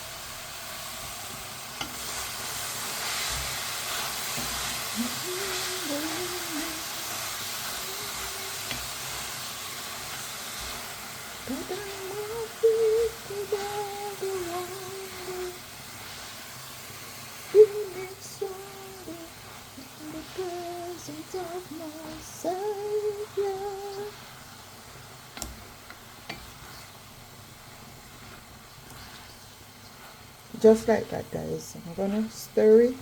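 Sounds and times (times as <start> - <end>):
woman humming: 4.9 - 8.8, 11.5 - 15.6, 17.6 - 24.2.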